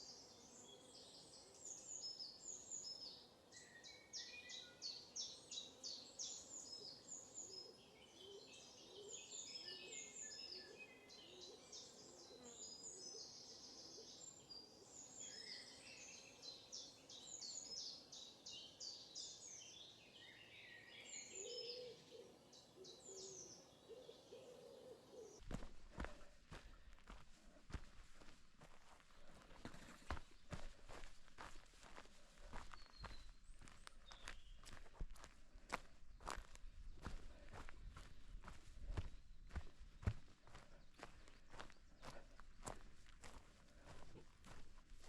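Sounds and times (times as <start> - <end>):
birds chirping and trilling: 0.0 - 45.0
footsteps: 25.4 - 45.0.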